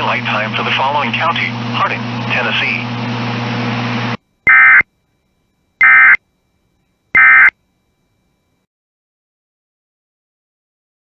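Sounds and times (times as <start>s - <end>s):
steady broadcast hum: 4.2s - 8.6s
short bursts of digital tones: 4.5s - 4.8s, 5.8s - 6.2s, 7.2s - 7.5s.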